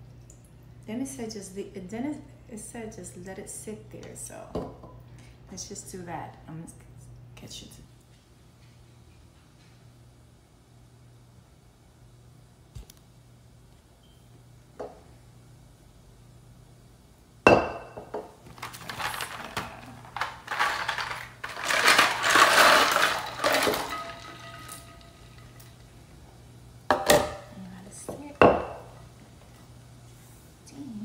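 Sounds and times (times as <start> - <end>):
faint steady hum: 0.0 - 31.0
pots and dishes clattering: 17.5 - 25.7.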